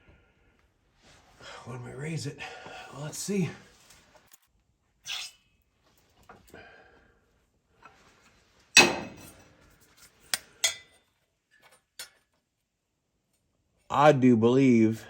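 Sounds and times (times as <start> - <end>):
sharp metal clank ringing: 8.8 - 9.4
steel plate knocks and clinks: 8.8 - 9.4, 10.6 - 11.0.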